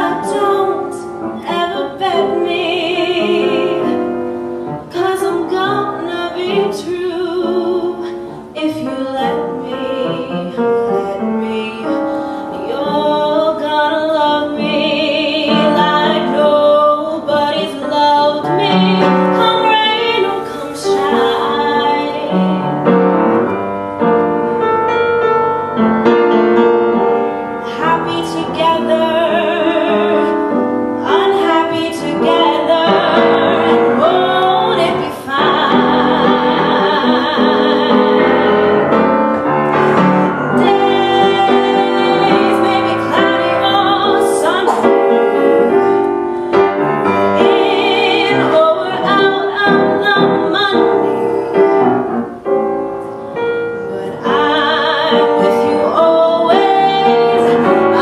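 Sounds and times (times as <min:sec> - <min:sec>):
woman singing: 0:00.0 - 0:04.2, 0:04.9 - 0:23.0, 0:27.6 - 0:39.0, 0:39.9 - 0:51.9, 0:53.4 - 0:58.0
piano: 0:00.0 - 0:58.0.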